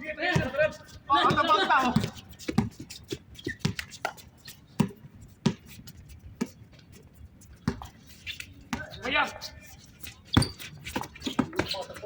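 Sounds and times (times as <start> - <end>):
basketball bouncing: 10.3 - 11.9
short high squeak: 10.3 - 11.9.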